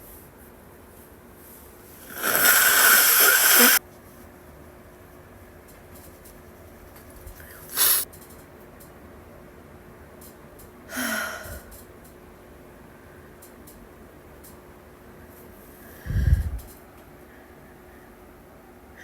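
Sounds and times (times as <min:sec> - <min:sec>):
woman sniffing: 0:02.0 - 0:03.8, 0:07.4 - 0:08.0.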